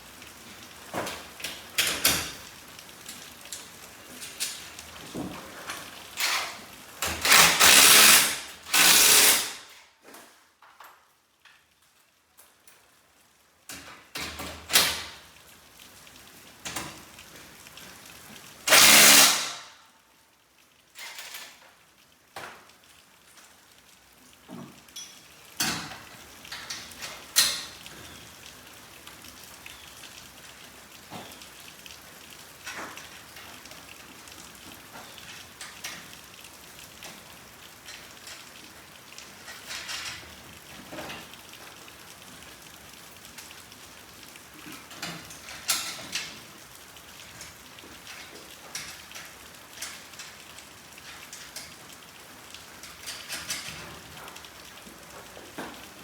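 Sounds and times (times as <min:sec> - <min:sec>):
power drill bursts: 0:07.2 - 0:09.6, 0:18.7 - 0:19.6.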